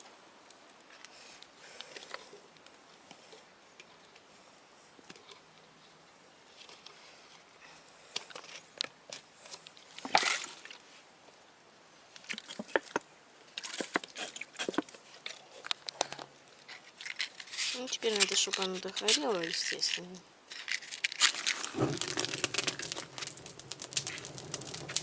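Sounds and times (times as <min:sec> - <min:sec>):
fire crackling in metal barrel: 0:13.7 - 0:25.0.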